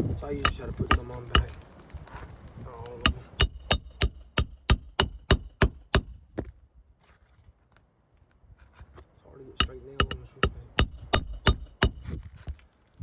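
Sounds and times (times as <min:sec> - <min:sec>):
hammer striking roofing nail: 0:00.4 - 0:01.6, 0:03.0 - 0:06.5, 0:09.6 - 0:12.2.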